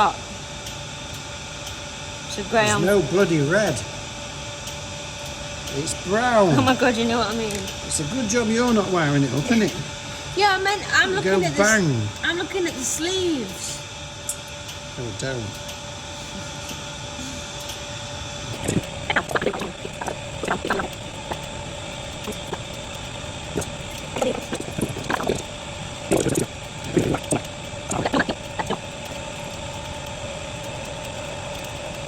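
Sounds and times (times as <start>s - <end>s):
machine hum with whine: 0.0s - 32.0s.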